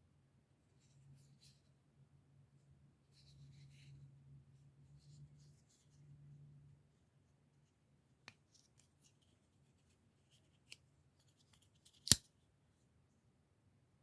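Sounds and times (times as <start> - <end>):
folding knife clicks: 12.0 - 12.2.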